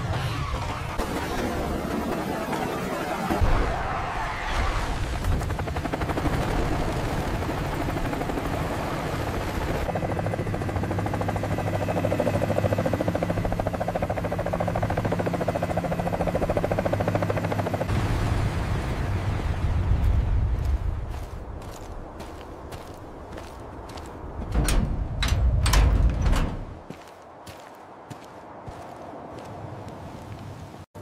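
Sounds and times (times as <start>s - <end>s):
helicopter rotor chopping: 0.0s - 3.4s, 5.2s - 17.9s.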